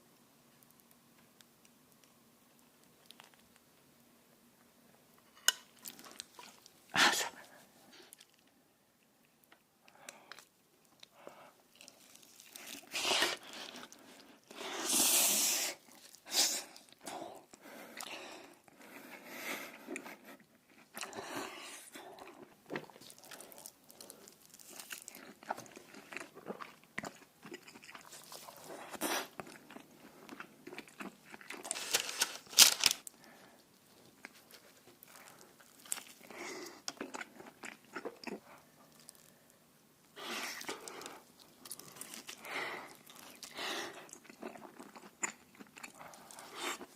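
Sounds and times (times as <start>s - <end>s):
crunchy bites and chewing: 22.2s - 33.1s, 34.1s - 39.4s.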